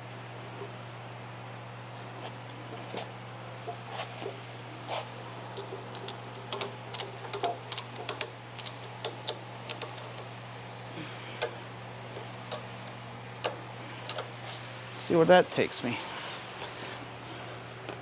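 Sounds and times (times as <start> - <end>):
ratchet clicking: 5.6 - 10.3, 11.4 - 14.4.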